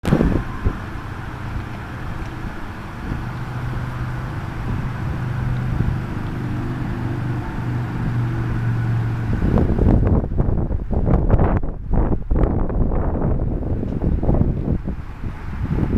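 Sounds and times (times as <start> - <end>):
vehicle engine idling: 0.0 - 15.9
wind buffeting microphone: 0.0 - 15.9.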